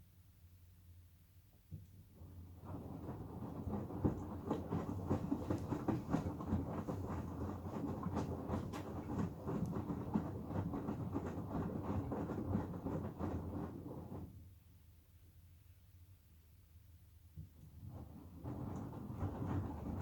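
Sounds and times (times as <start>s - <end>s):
washing machine rumbling: 2.1s - 14.5s, 17.5s - 20.0s.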